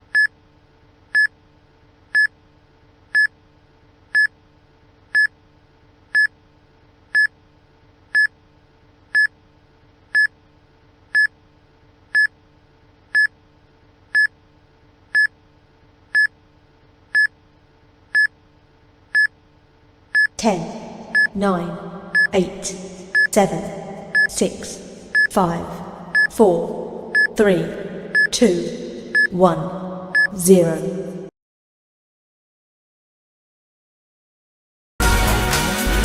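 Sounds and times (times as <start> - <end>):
faint steady hum: 0.0 - 31.3
timer beeps: 20.2 - 31.3.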